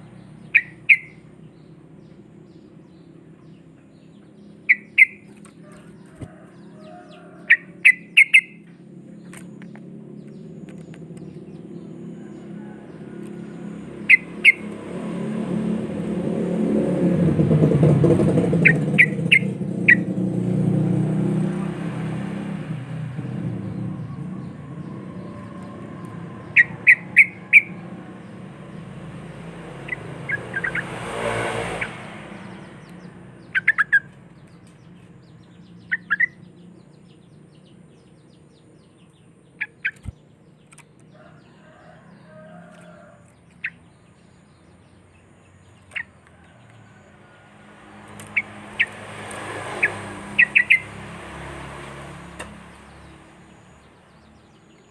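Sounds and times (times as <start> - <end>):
bulbul calling: 0.0 - 15.0, 17.6 - 20.3, 23.2 - 31.0, 31.7 - 42.3, 42.9 - 47.0, 48.0 - 51.0
low vehicle rumble: 0.0 - 54.9
passing noise: 8.7 - 33.8, 47.2 - 53.9.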